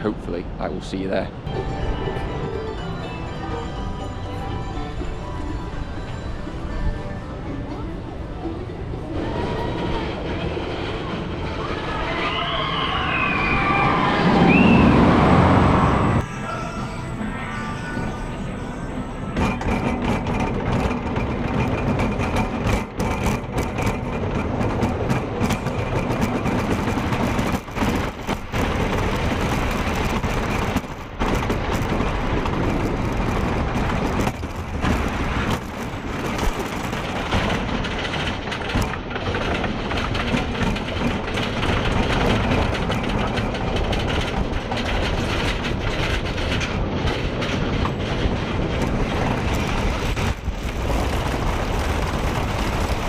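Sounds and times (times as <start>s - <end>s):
roller coaster running on track: 0.0s - 53.0s.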